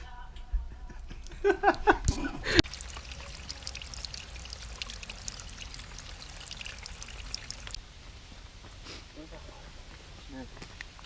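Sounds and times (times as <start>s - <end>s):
running water trickling: 2.4s - 7.8s
small splashes and drips: 2.6s - 7.8s.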